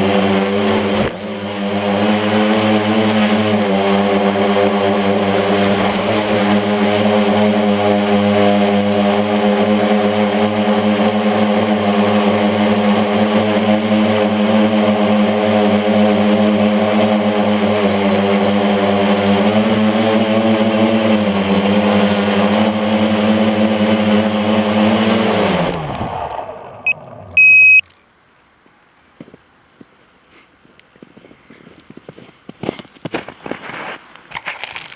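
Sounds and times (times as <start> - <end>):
drone motors whining: 0.0 - 27.8.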